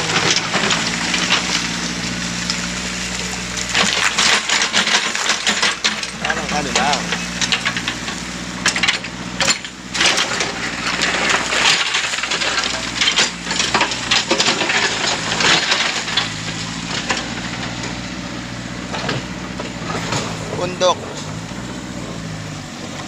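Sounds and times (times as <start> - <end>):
diesel engine running: 0.0 - 23.0
crunches and clatters in bucket: 3.3 - 8.1, 8.7 - 17.8.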